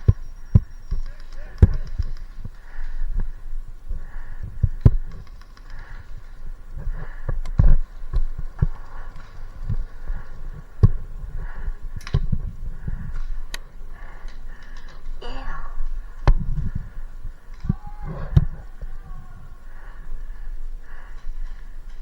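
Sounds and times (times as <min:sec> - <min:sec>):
sharp snaps: 0:13.1 - 0:19.2.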